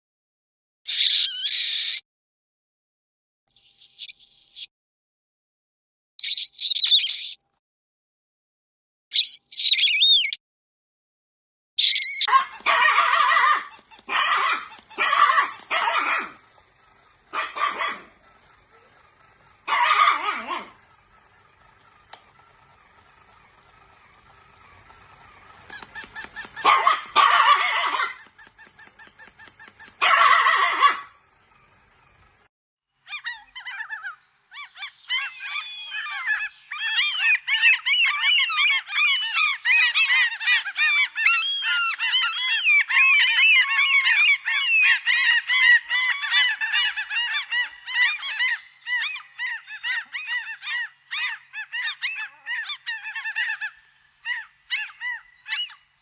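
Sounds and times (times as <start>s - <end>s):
loud harsh bird calls: 0.9s - 2.0s, 6.2s - 7.4s, 9.1s - 10.4s, 11.8s - 32.0s, 33.0s - 56.0s
flock of birds calling: 11.8s - 32.5s, 33.1s - 56.0s.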